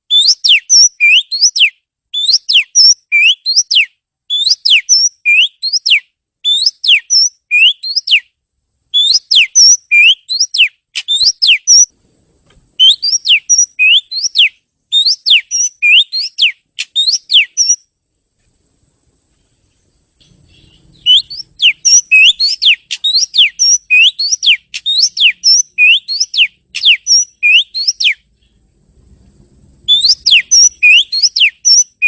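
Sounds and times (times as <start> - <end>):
bird singing whistled notes: 0.1 - 8.3, 8.9 - 11.9, 12.8 - 17.9, 19.9 - 28.6, 29.8 - 32.0.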